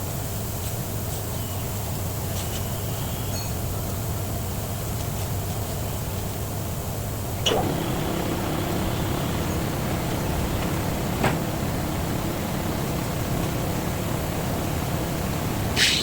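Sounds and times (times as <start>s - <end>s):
low machine hum: 7.4s - 16.0s.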